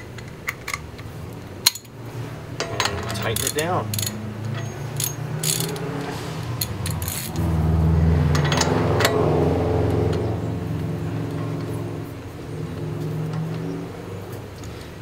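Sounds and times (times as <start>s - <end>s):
ratchet clicks: 2.8s - 5.9s, 6.6s - 7.4s
low engine hum: 3.7s - 15.0s.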